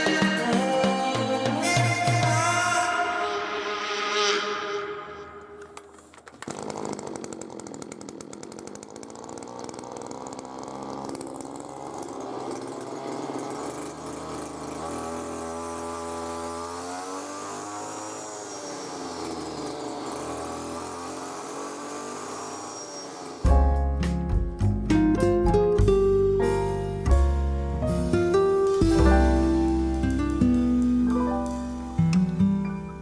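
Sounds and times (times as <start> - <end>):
brush cutter engine revving: 0.0 - 24.2, 28.4 - 32.6
thin high whine: 2.4 - 5.8.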